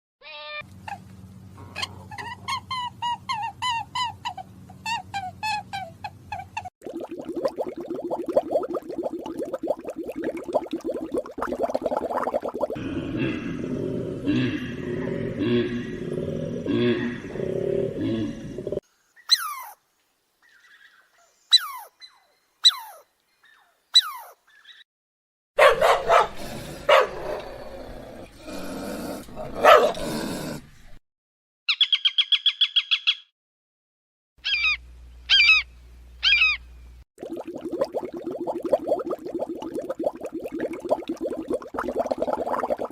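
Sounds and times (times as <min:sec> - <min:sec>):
harsh dog-like barking calls: 0:25.6 - 0:27.4, 0:29.5 - 0:30.2.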